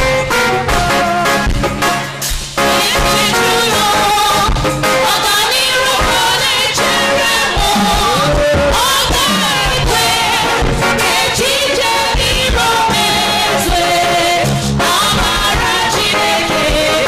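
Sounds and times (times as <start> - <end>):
person singing gospel song: 0.0 - 1.9, 2.6 - 17.0
band with drums and bass: 0.0 - 17.0.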